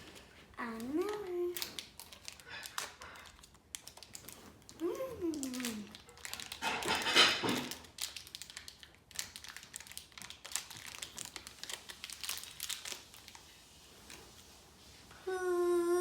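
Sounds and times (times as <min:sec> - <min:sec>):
plastic packaging crinkling: 0:00.0 - 0:14.6.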